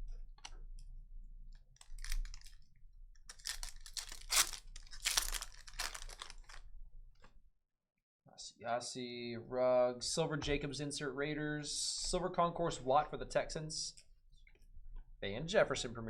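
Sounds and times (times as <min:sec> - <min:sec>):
card wrappers ripping and crinkling: 0:01.8 - 0:02.6, 0:03.3 - 0:06.6.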